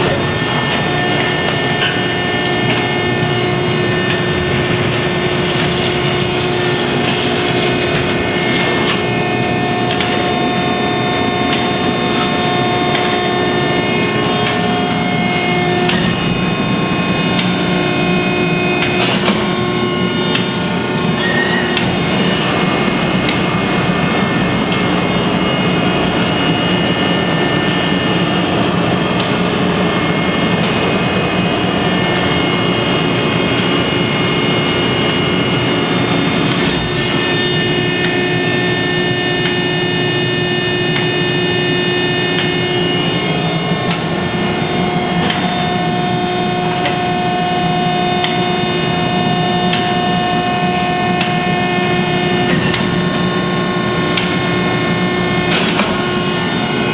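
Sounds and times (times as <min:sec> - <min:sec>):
baler mechanical din: 0:00.0 - 0:30.7
whining tones: 0:00.0 - 0:56.9.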